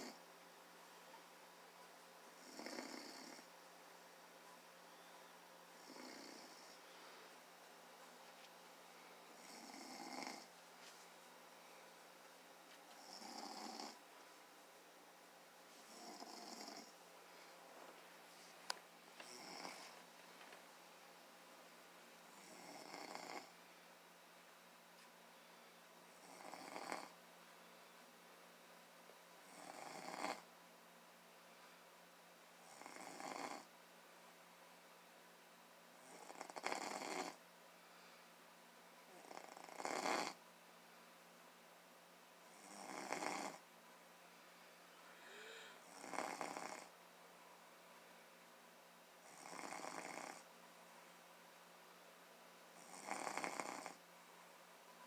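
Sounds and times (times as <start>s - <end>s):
faint snoring: 0.0s - 0.2s, 2.3s - 3.5s, 5.8s - 7.1s, 9.3s - 10.5s, 13.0s - 14.0s, 15.8s - 17.0s, 19.2s - 20.0s, 22.3s - 23.6s, 26.1s - 27.2s, 29.4s - 30.5s, 32.6s - 33.7s, 36.0s - 37.4s, 39.1s - 40.4s, 42.5s - 43.6s, 45.0s - 47.0s, 49.2s - 50.5s, 52.8s - 54.0s.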